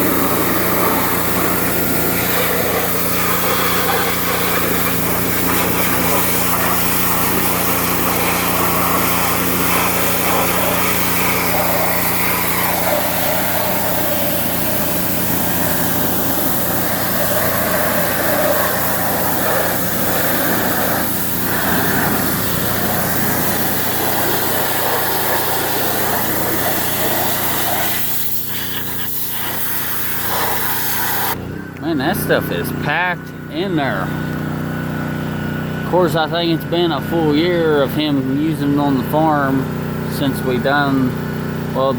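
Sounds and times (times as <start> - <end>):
pressure washer spraying: 0.0 - 41.9.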